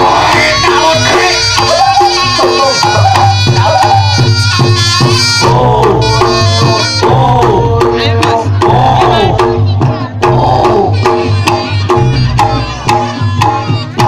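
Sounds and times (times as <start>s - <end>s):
gamelan music: 0.0s - 14.0s
hand drums beating: 0.0s - 14.0s.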